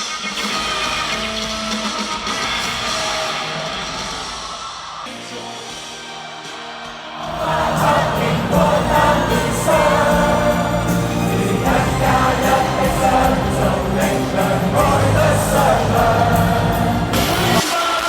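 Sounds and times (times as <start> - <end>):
crowd singing along: 5.1 - 18.0
bass-heavy live band backing: 7.3 - 17.7.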